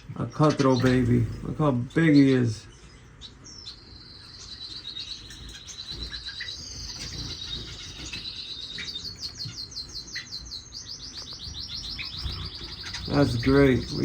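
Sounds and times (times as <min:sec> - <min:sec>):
finches trilling and chirping: 0:00.0 - 0:14.0.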